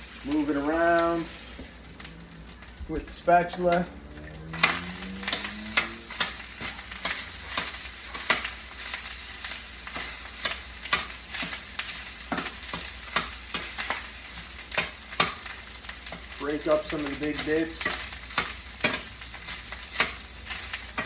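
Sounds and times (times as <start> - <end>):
food sizzling in a frying pan: 0.0 - 21.0
spatula scraping a pan: 4.5 - 16.3.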